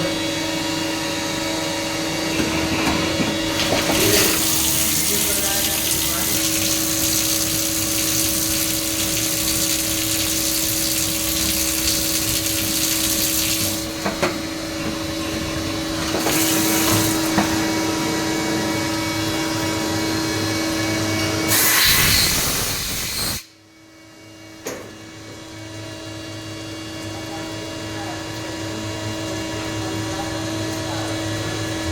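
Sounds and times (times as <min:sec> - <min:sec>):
machine hum: 0:00.0 - 0:21.5
machine hiss: 0:21.5 - 0:23.5.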